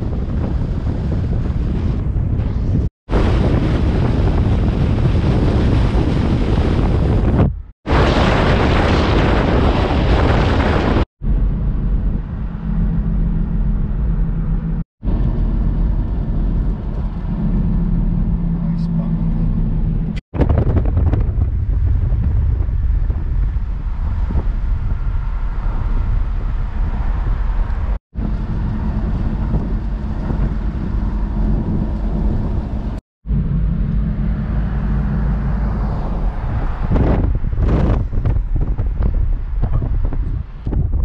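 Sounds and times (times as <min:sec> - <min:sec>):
wind buffeting microphone: 0:00.0 - 0:41.0
car road and engine rumble: 0:10.2 - 0:41.0.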